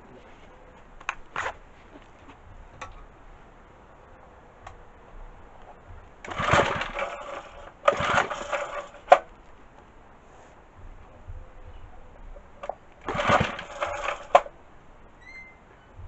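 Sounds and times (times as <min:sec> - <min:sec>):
engine pull-starter whirring: 0:05.6 - 0:09.4, 0:11.1 - 0:16.0.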